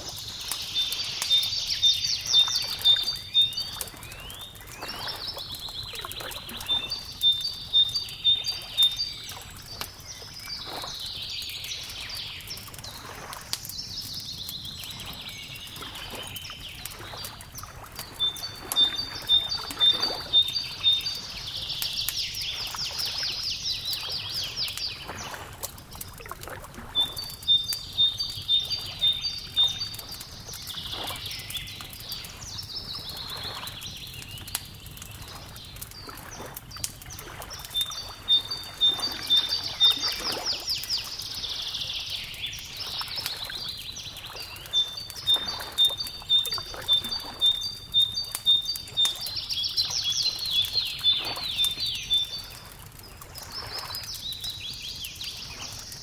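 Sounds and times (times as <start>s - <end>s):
songbird singing: 0.0s - 56.0s
wood fire crackling: 0.0s - 56.0s.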